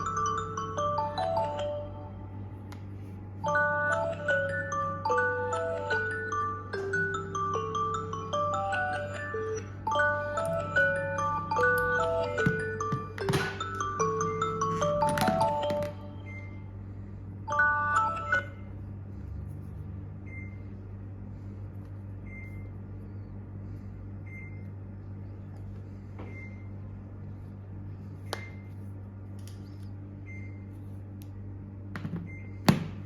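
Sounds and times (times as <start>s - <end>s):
marimba-like ringtone: 0.0s - 2.3s, 3.4s - 16.7s, 17.5s - 18.7s
steady low hum: 0.0s - 33.0s.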